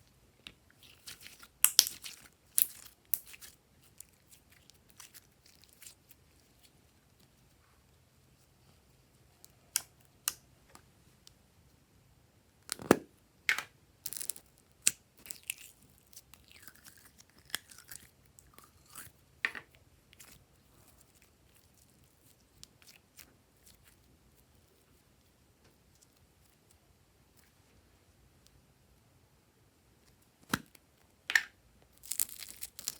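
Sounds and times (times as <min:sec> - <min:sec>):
slime clicking and popping: 0:01.6 - 0:03.4.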